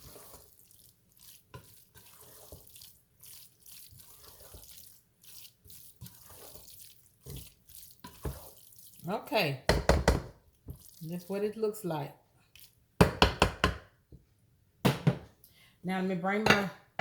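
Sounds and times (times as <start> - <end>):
wet squishing of food: 0.0 - 9.5, 10.4 - 13.0
spoon scraping pan: 0.0 - 11.8.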